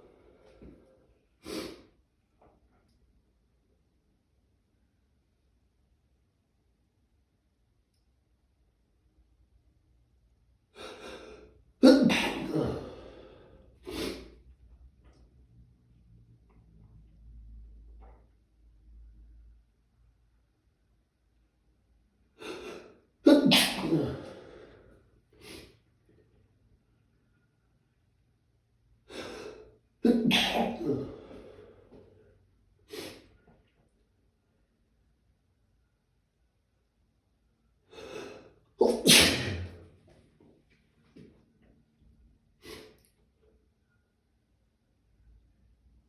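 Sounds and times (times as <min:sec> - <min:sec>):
person sneezing: 0:01.4 - 0:01.9, 0:10.8 - 0:14.4, 0:22.4 - 0:24.7, 0:25.4 - 0:25.8, 0:29.1 - 0:31.6, 0:32.9 - 0:33.3, 0:37.9 - 0:39.9, 0:42.6 - 0:43.0
short breath: 0:12.7 - 0:14.4, 0:31.0 - 0:32.2.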